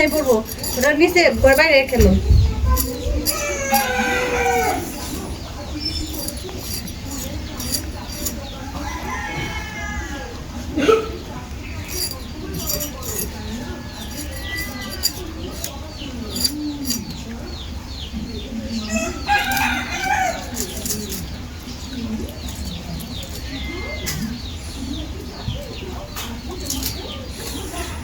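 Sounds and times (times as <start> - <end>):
small birds chirping: 0.0 - 9.3, 11.2 - 28.0
rooster crowing: 2.8 - 5.2, 8.1 - 10.4, 18.9 - 20.9.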